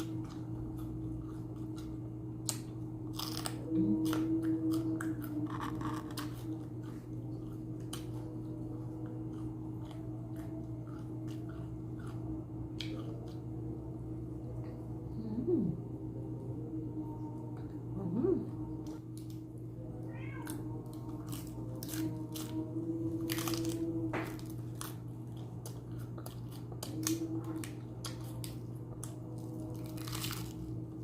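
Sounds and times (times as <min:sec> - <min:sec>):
person chewing food: 0:00.0 - 0:13.8, 0:20.4 - 0:30.9
low hum: 0:00.0 - 0:31.0.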